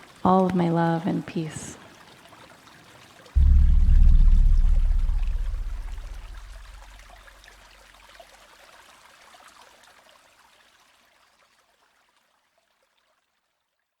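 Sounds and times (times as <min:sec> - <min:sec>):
low hum: 0:03.4 - 0:07.2.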